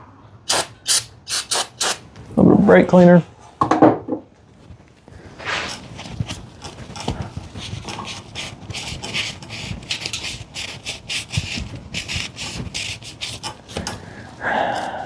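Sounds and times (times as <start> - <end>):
rag scrubbing metal: 5.4 - 14.1.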